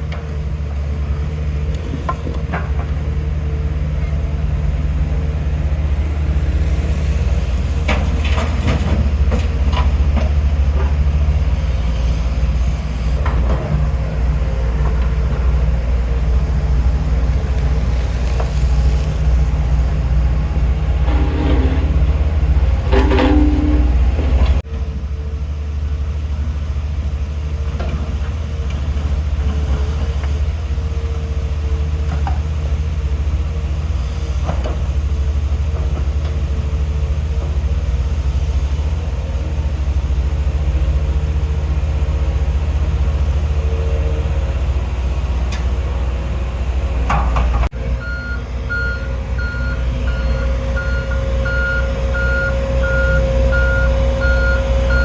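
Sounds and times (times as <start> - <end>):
diesel machinery rumbling: 0.0 - 55.0
reversing alarm beeping: 48.0 - 55.0.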